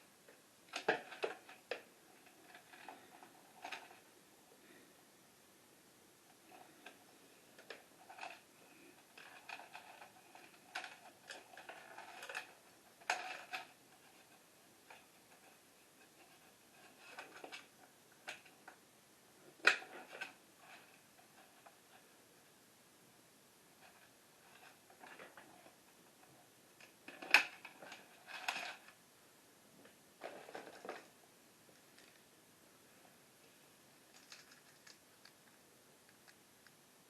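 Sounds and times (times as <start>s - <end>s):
packaging rustling and clicks: 34.1s - 36.4s.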